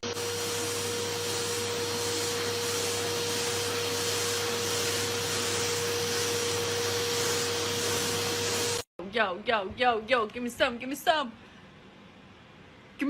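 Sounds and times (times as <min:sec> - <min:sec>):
electric appliance motor running: 0:00.0 - 0:08.9.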